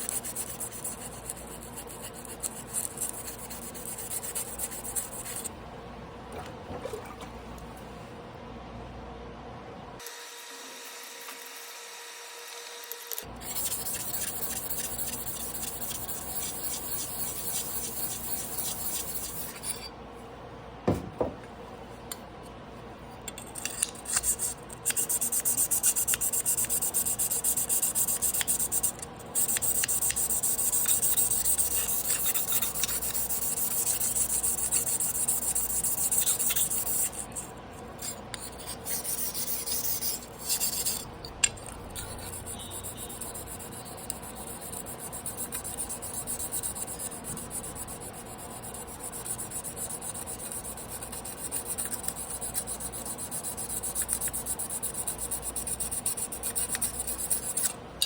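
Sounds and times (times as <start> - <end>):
knife sharpening on whetstone: 13.4 - 19.9, 23.7 - 41.1, 42.0 - 47.1, 47.7 - 57.8.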